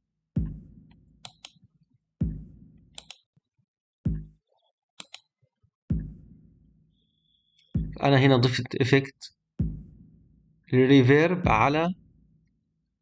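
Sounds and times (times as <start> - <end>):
deep kick drum thumps with reverb: 0.4 - 0.9, 2.2 - 2.9, 4.1 - 4.4, 5.9 - 6.7, 7.8 - 8.0, 9.6 - 10.5, 11.4 - 12.3.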